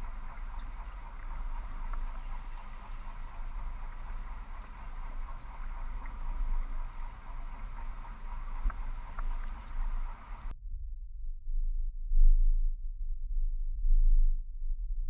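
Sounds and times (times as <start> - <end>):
wind buffeting microphone: 0.0 - 10.5
faint steady hum: 0.0 - 15.0.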